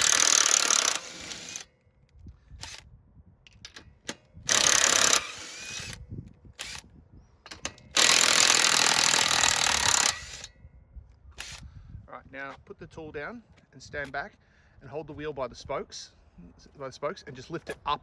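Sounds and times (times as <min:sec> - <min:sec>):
impact driver spinning nuts: 0:00.0 - 0:01.7, 0:03.6 - 0:06.0, 0:07.5 - 0:10.5.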